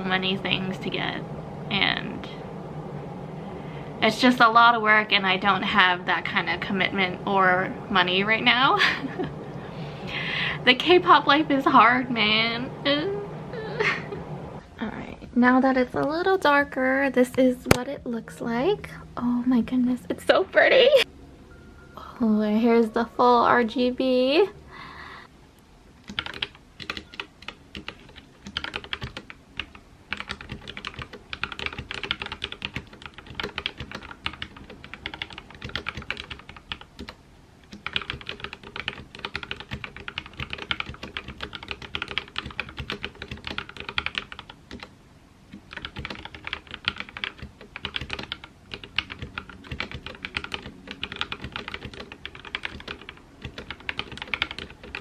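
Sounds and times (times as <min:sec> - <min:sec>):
mechanical keyboard typing: 0:26.0 - 0:44.9, 0:45.5 - 0:55.0.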